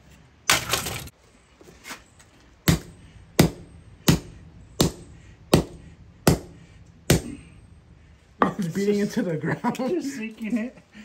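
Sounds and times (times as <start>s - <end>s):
hammer strikes: 2.6s - 7.5s.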